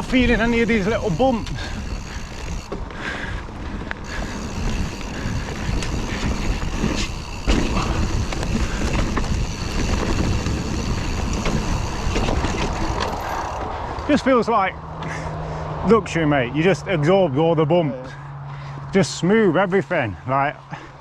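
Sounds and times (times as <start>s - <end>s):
wind buffeting microphone: 0.0s - 14.1s
bike tyres rumbling on dirt: 0.0s - 14.3s
bike clicks and rattles: 0.0s - 15.2s.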